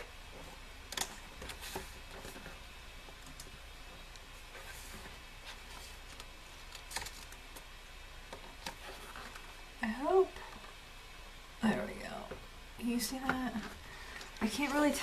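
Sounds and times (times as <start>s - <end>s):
computer fan whirring: 0.0s - 15.0s
paper rustling and tapping: 5.8s - 7.7s.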